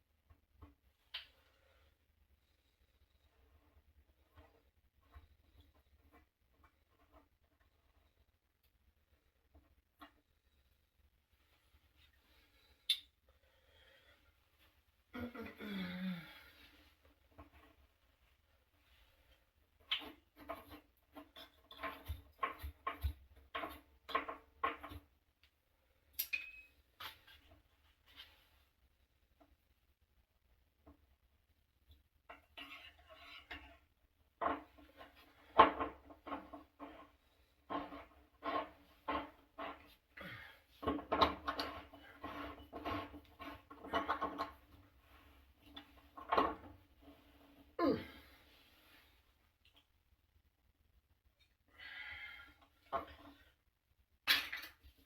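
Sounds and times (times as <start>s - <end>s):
hand tool creaking and rubbing: 19.9s - 25.1s, 32.3s - 47.8s.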